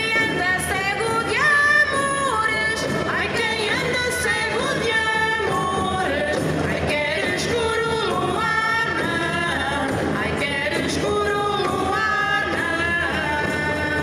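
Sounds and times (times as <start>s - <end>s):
group singing long notes: 3.3s - 14.0s.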